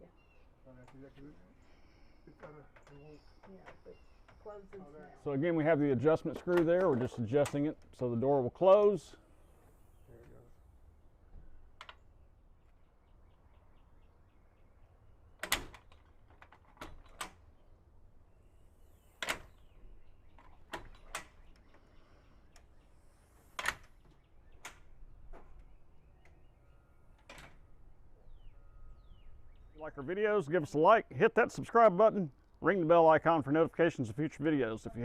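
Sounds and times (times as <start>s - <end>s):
screen door clacking shut: 15.4s - 17.5s, 19.1s - 21.6s, 27.1s - 27.7s.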